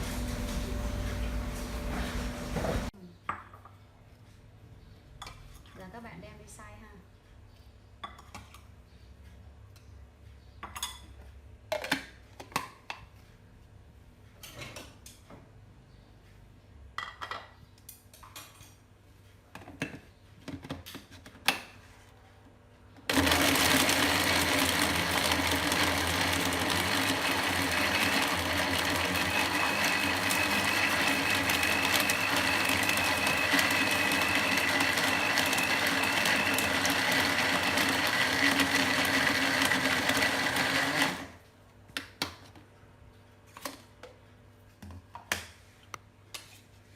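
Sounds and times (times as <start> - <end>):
electric food grinder running: 23.1 - 41.4.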